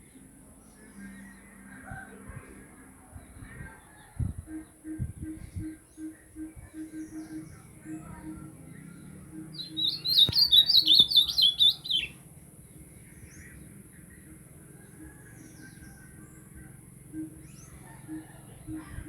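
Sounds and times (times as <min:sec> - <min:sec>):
bird singing warbling phrase: 0:09.5 - 0:12.2.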